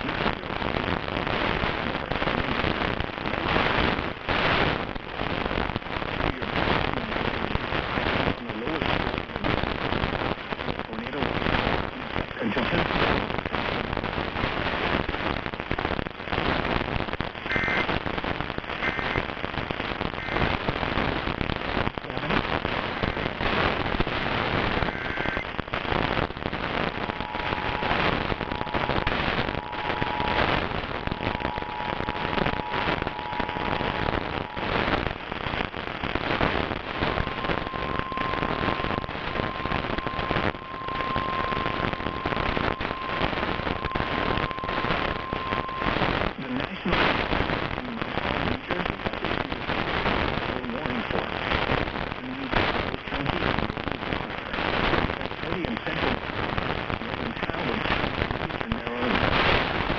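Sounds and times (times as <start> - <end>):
heavy crackling radio static: 0.0 - 59.9
high data chirps: 24.6 - 49.1
two-tone attention signal: 37.0 - 46.0.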